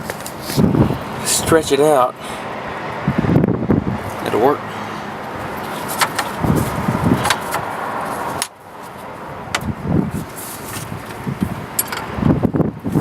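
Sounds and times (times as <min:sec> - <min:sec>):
steady background noise: 0:00.0 - 0:13.0
belt clicking onto engine pulleys: 0:05.4 - 0:08.6, 0:09.5 - 0:12.2.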